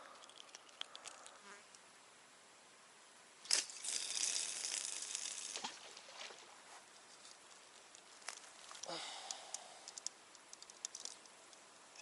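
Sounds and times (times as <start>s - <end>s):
rustling and crinkling: 4.2s - 8.9s.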